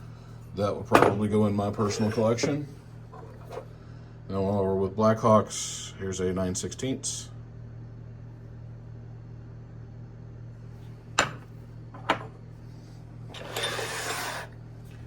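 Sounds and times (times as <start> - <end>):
metal sliding on surface: 13.3 - 14.6.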